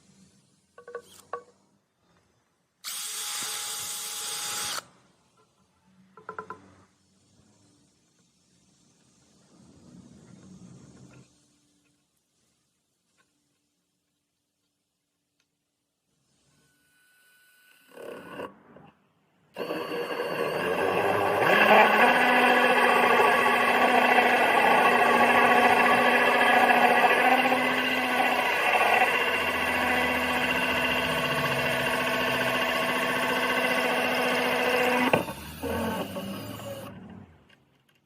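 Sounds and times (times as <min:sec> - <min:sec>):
electric drill cutting wood: 0:02.9 - 0:04.8, 0:19.6 - 0:36.9.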